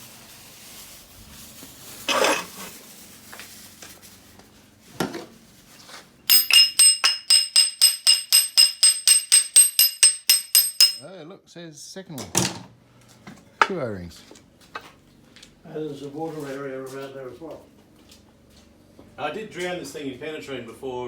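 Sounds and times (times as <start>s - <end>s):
rapid metallic tapping: 6.3s - 11.0s.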